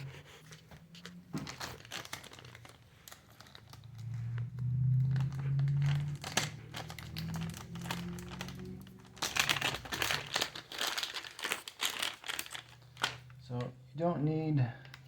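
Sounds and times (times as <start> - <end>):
plastic packaging crinkling: 0.0 - 13.6
low hum shifting in pitch: 3.7 - 9.6.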